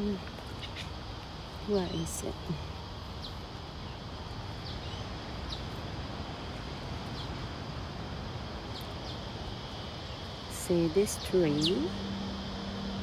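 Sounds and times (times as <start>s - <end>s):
low outdoor rumble: 0.0s - 13.0s
birds chirping: 10.0s - 13.0s.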